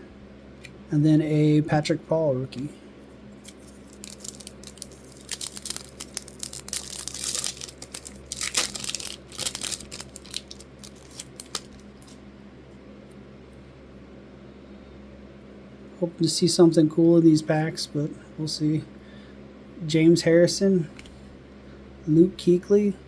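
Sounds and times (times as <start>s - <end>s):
foil pack tearing and crinkling: 3.4s - 12.2s.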